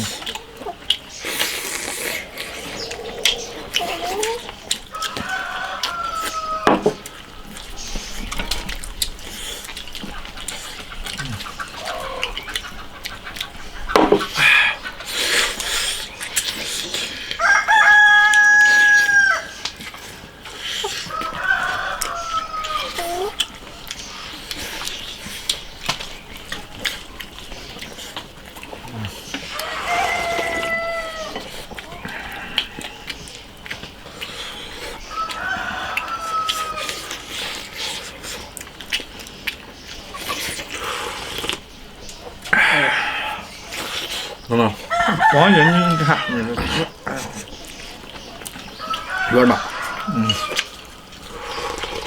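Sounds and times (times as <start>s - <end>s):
rooster crowing: 2.7s - 7.0s, 17.4s - 19.7s, 21.0s - 23.5s, 29.4s - 33.1s, 35.0s - 37.2s, 44.8s - 46.9s, 48.8s - 51.6s.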